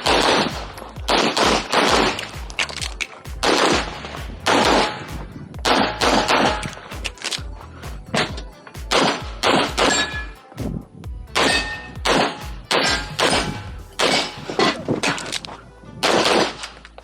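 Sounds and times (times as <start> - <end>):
pistol shots: 0.0 - 7.2, 8.9 - 10.4, 11.4 - 15.4, 16.0 - 16.8
steel plates ringing: 9.8 - 10.4, 11.4 - 15.4.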